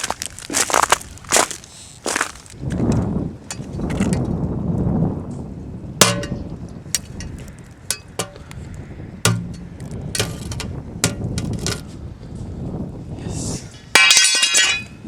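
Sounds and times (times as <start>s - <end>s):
metal bar knocking on mailbox: 3.5s - 4.2s, 6.0s - 8.6s, 9.3s - 11.9s.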